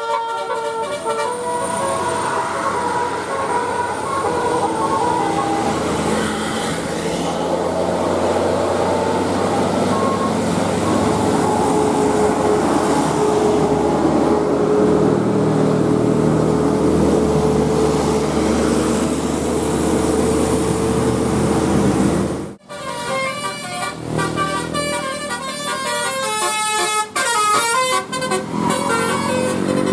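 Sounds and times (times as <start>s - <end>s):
bus diesel engine running: 0.0s - 29.9s
road and tyre noise: 0.0s - 29.9s.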